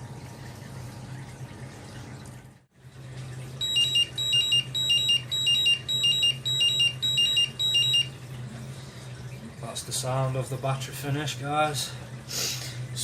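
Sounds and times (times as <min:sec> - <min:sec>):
battery charger beeping: 0:03.6 - 0:08.1.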